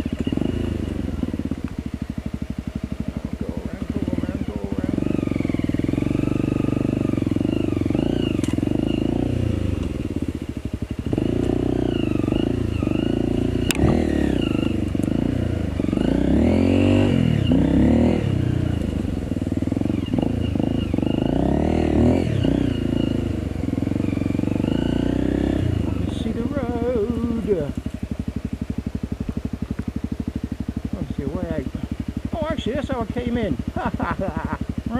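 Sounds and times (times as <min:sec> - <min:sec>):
motorbike engine revving: 0:00.0 - 0:34.9
sharp click: 0:08.4 - 0:08.6.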